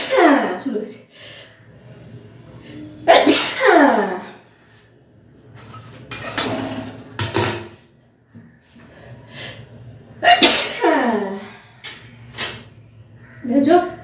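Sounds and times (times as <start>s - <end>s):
woman sneezing: 3.1s - 4.1s, 10.3s - 11.2s.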